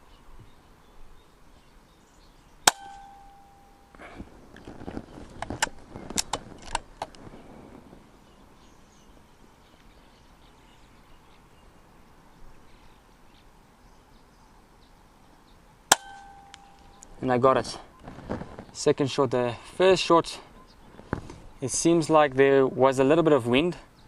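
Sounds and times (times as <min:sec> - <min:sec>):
faint high chirps: 0:08.2 - 0:18.7.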